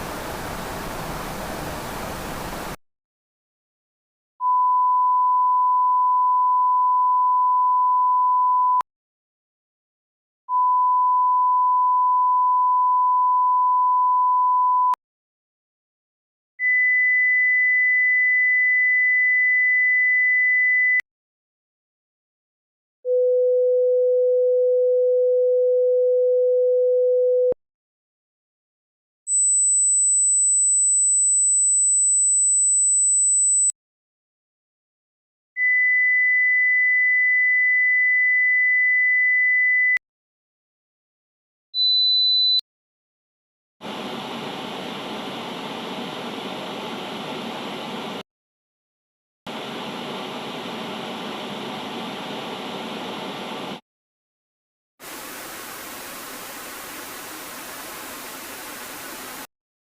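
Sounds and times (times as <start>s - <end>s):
static hiss: 0.0s - 2.8s, 43.9s - 48.2s, 49.5s - 53.8s, 55.0s - 59.5s.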